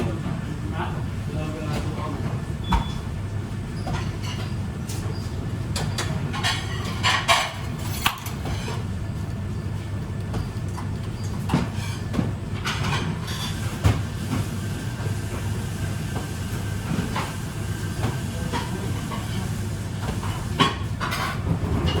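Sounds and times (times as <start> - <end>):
low machine hum: 0.0 - 22.0
pans and utensils clattering: 5.8 - 8.9, 10.8 - 14.6, 18.1 - 22.0.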